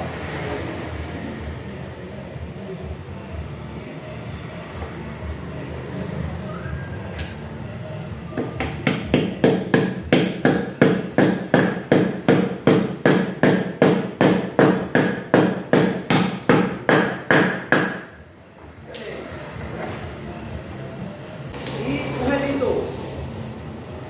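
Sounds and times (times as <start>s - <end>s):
hammer striking metal: 8.4s - 18.1s.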